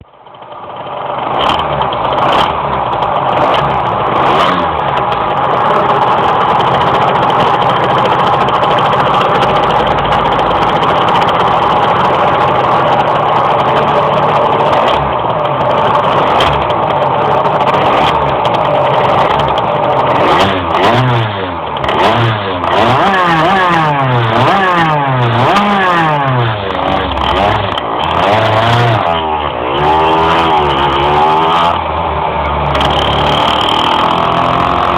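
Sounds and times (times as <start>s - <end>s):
two-stroke engine revving: 0.5s - 34.9s.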